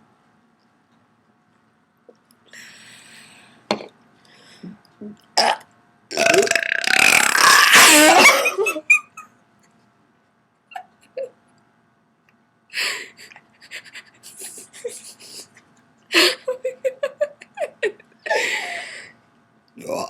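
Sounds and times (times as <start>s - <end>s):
person breathing: 2.5s - 4.8s, 18.3s - 19.2s
person belching: 5.4s - 8.6s.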